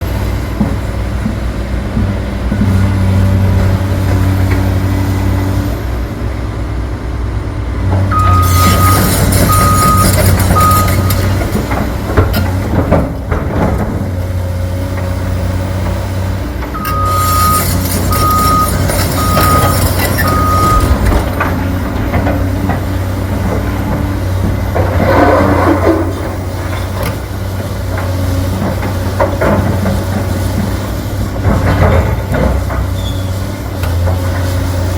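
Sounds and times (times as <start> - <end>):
excavator diesel engine: 0.0 - 34.9
motion alarm beeps: 8.1 - 11.2, 16.8 - 21.2.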